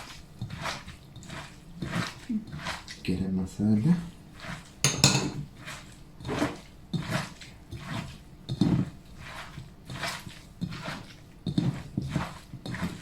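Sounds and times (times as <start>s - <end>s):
utensils and bowls clinking: 4.8s - 5.5s.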